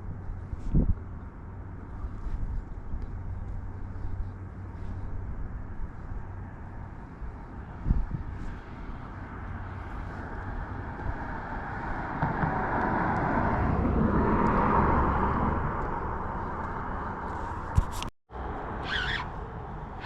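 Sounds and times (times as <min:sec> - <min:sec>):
car passing by: 0:08.4 - 0:17.7.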